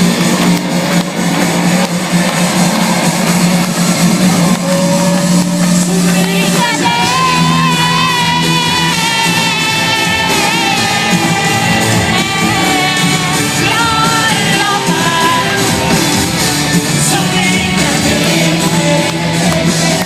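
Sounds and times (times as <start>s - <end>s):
full band playing: 0.0s - 20.0s
person singing: 4.4s - 20.0s.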